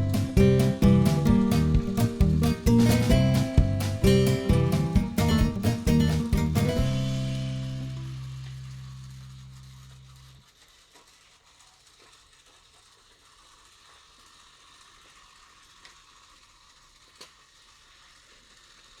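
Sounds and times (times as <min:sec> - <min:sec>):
background music: 0:00.0 - 0:08.4
faint steady hiss: 0:00.0 - 0:19.0.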